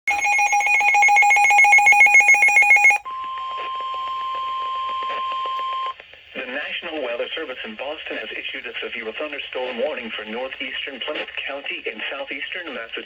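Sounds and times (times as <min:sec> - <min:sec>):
rapid electronic beeping: 0:00.0 - 0:03.0
steady high alarm tone: 0:00.0 - 0:04.1.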